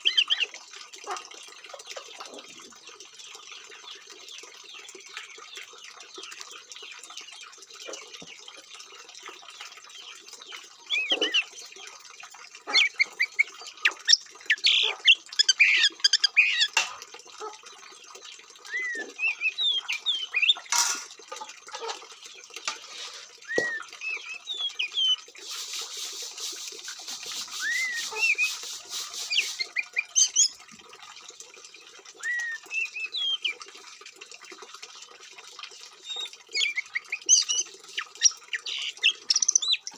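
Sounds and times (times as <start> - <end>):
songbird singing whistles and chirps: 18.7 - 20.6, 23.4 - 25.3, 27.4 - 30.6, 32.2 - 33.6, 36.0 - 39.9.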